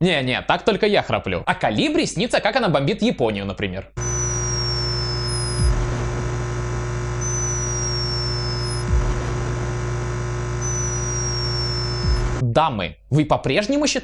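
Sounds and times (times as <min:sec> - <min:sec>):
hummingbird snoring whistle: 0:04.0 - 0:05.7, 0:07.2 - 0:08.9, 0:10.6 - 0:12.3
microphone noise hum: 0:04.0 - 0:12.4
low thump: 0:08.8 - 0:09.6.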